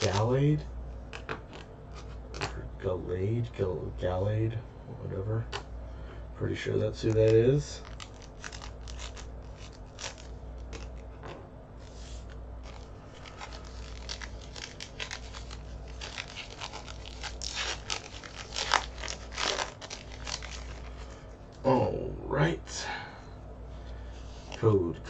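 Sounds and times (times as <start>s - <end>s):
cards being handled: 0.0s - 0.4s, 1.0s - 2.6s, 6.9s - 21.6s
foil wrapper crinkling and tearing: 0.0s - 0.4s, 7.0s - 11.1s, 12.6s - 21.2s.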